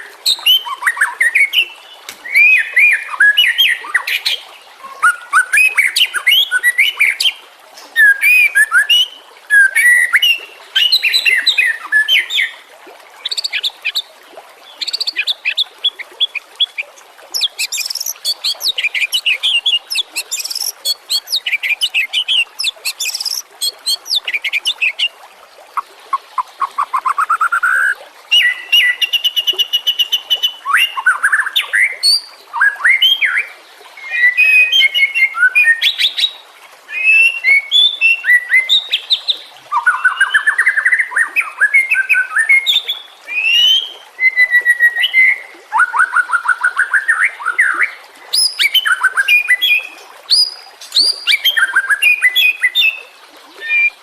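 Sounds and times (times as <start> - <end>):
bird singing whistled phrases: 2.2 - 4.1, 8.0 - 12.5, 17.4 - 25.1, 34.0 - 35.9, 36.9 - 38.9, 39.7 - 53.0, 53.6 - 54.0.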